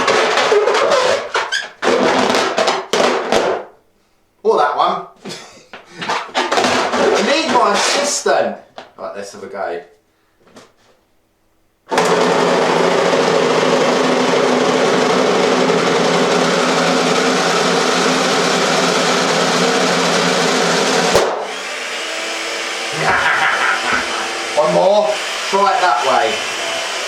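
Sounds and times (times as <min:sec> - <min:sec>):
balloon bursting bang: 0:01.8 - 0:03.8, 0:21.1 - 0:21.6
electric food mixer running: 0:11.9 - 0:27.0.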